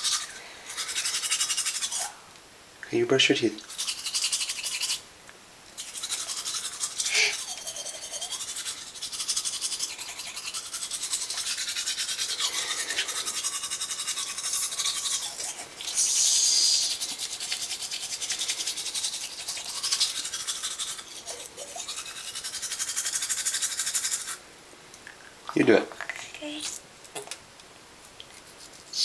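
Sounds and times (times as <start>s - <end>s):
toothbrush scrubbing teeth: 0.0s - 2.1s, 3.6s - 5.0s, 5.8s - 24.4s, 28.2s - 29.0s
loud hiss: 15.9s - 17.2s.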